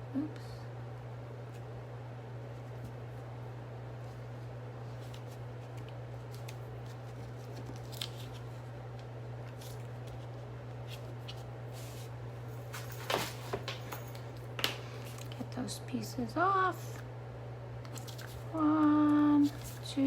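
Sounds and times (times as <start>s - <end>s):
steady low hum: 0.0s - 20.0s
paper and card rustling: 4.8s - 8.8s, 9.4s - 13.9s, 17.9s - 20.0s
paper crinkling: 4.8s - 13.8s, 17.9s - 20.0s.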